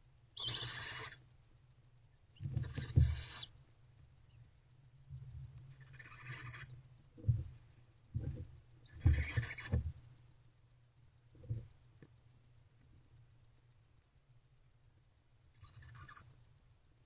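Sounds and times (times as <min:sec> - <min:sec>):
barn owls hissing calls: 0:00.4 - 0:01.2, 0:02.4 - 0:03.6, 0:05.6 - 0:06.8, 0:08.9 - 0:09.8
dull thumps and scuffles: 0:07.2 - 0:10.0.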